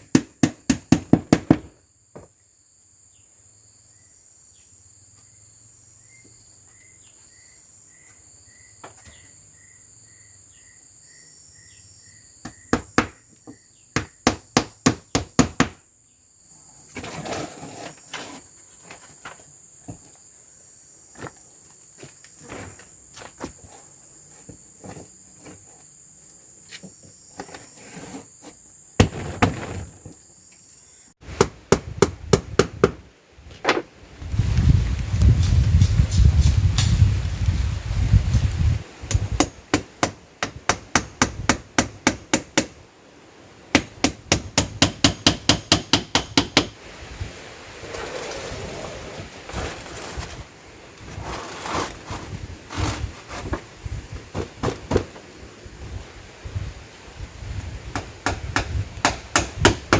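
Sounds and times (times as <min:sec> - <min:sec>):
high insect drone: 0:00.2 - 0:31.2
sharp blows on wood: 0:39.0 - 0:42.8, 0:43.7 - 0:46.8, 0:57.9 - 0:59.9.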